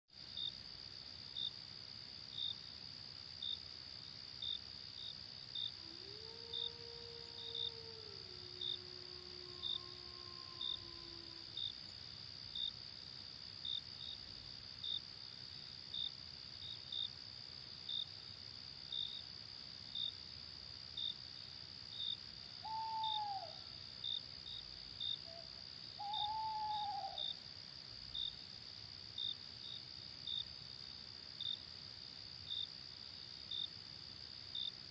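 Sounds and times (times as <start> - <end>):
insect chirping: 0.2 - 34.9
crickets trilling: 4.4 - 14.2, 21.9 - 30.6
owl hooting: 22.6 - 23.6, 25.3 - 27.3.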